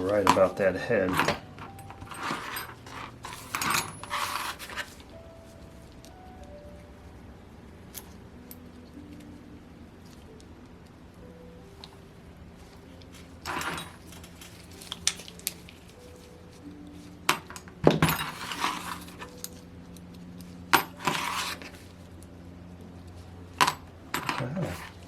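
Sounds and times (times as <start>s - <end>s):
metal parts and tools clinking: 0.0s - 5.2s, 7.9s - 9.3s, 12.6s - 16.3s, 17.0s - 22.0s, 23.0s - 25.0s
faint steady hum: 0.0s - 25.0s.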